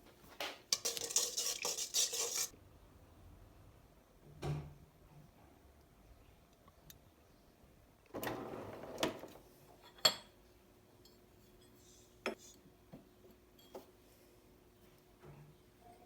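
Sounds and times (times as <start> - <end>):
dish scraping: 0.8 - 2.5
dishes clinking: 9.8 - 10.4.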